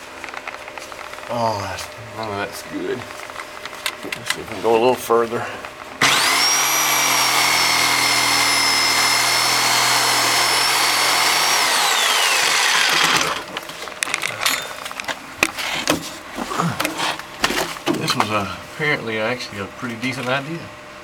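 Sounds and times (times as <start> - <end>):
reciprocating saw cutting wood: 6.0 - 13.5.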